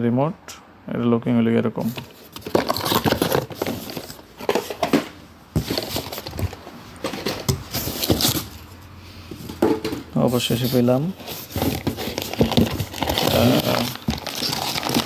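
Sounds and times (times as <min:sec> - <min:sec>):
plastic packaging crinkling: 0:01.8 - 0:08.7, 0:10.2 - 0:15.0.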